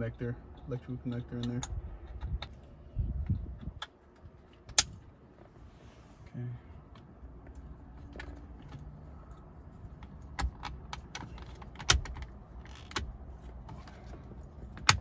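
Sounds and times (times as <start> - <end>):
sharp clicks and light knocks: 0.5 - 2.6, 6.9 - 15.0.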